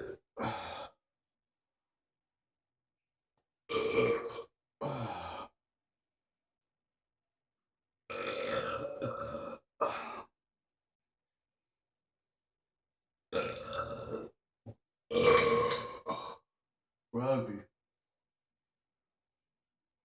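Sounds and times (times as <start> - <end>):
man burping: 3.7 - 5.2, 8.1 - 10.2, 13.4 - 14.3, 15.1 - 16.4.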